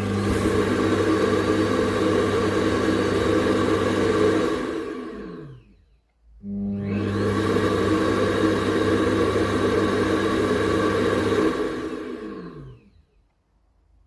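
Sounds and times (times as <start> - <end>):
robot vacuum suction whirring: 0.0 - 5.7.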